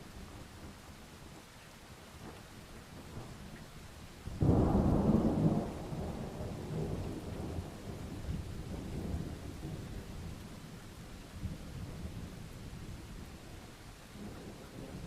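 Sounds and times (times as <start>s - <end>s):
rain falling: 0.0s - 15.0s
thunder clap and rumble: 4.4s - 10.4s.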